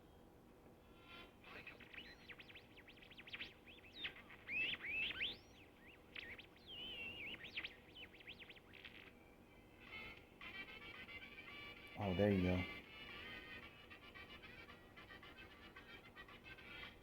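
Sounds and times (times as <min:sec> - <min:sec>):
radio whistles and squeals: 0:01.4 - 0:09.2.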